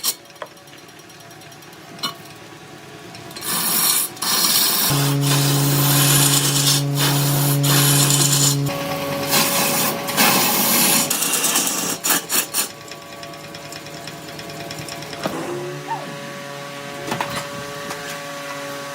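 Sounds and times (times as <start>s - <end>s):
tool rasping on wood: 4.9s - 8.7s
low steady hum: 4.9s - 8.8s.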